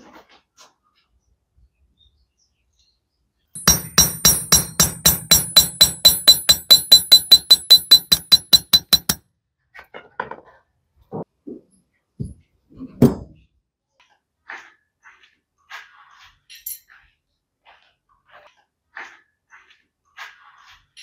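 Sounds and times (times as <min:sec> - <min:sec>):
sharp ringing strikes: 0:03.6 - 0:09.2.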